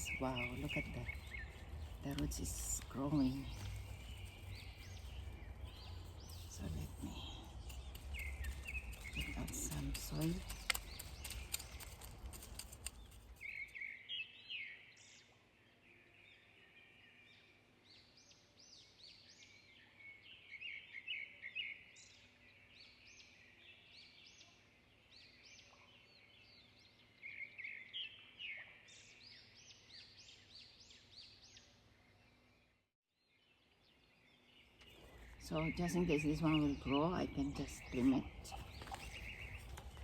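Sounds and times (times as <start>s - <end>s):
clattering and scraping: 0.0s - 13.6s
songbird chirping: 0.0s - 40.0s.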